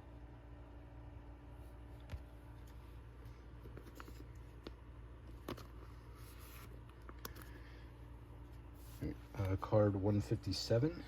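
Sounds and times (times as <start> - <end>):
low steady hum: 0.0 - 11.0
cards rustling and scraping: 2.0 - 7.8.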